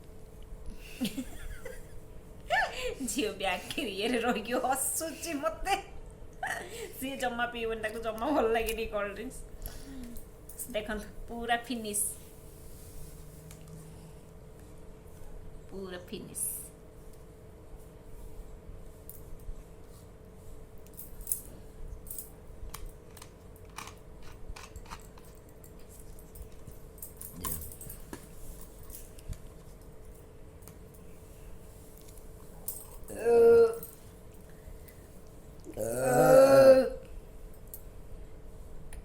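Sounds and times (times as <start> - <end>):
faint steady hum: 0.0 - 39.0
woman burping loudly: 35.7 - 37.1.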